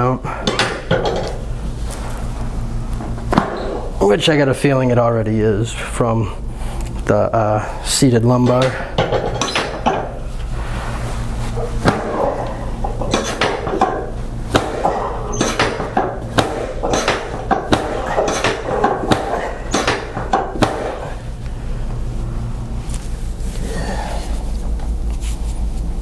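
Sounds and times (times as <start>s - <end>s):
steady low hum: 0.0s - 26.0s
sharp clicks and knocks: 8.5s - 10.2s, 11.6s - 21.2s.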